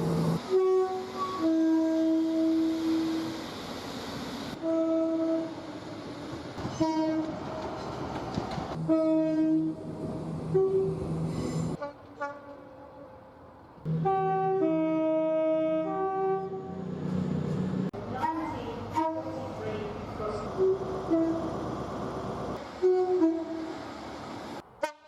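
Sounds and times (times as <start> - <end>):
train horn blasts: 0.4 - 3.3, 4.6 - 5.6, 6.7 - 7.4, 8.8 - 13.1, 13.9 - 16.8, 18.2 - 19.5, 20.6 - 21.5, 22.8 - 23.7, 24.8 - 25.0.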